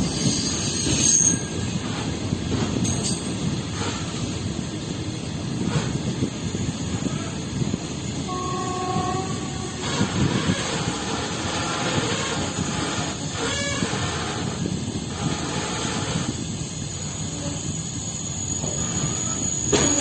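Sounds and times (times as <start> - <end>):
train rumbling on rails: 0.0 - 20.0
two-tone train horn: 8.2 - 10.8.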